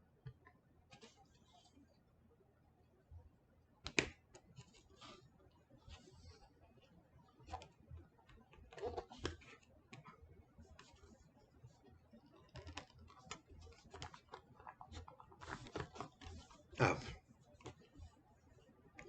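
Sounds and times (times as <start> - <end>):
hands clicking and scraping plastic: 3.8 - 4.8, 7.4 - 18.2.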